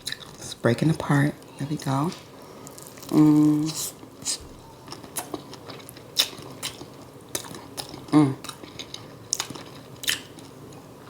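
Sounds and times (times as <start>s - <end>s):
chewing with wet mouth smacks: 0.0s - 0.4s, 2.6s - 10.8s
person humming mm: 3.1s - 4.4s, 8.1s - 8.4s.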